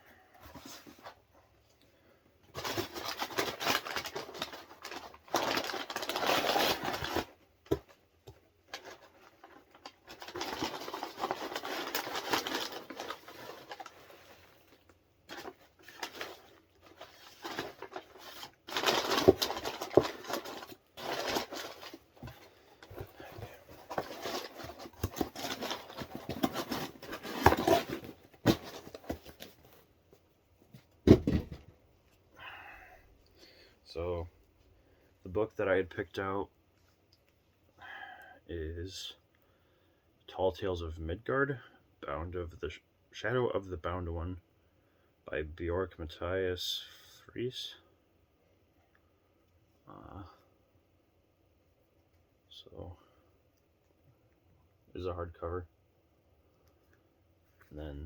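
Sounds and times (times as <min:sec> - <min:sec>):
packaging tearing and crinkling: 0:02.6 - 0:07.4, 0:08.7 - 0:14.1, 0:15.3 - 0:22.3, 0:23.7 - 0:29.5.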